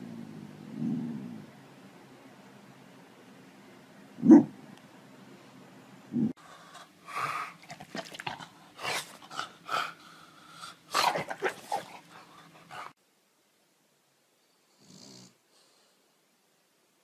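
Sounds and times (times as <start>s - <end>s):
dog barking: 4.2s - 4.5s.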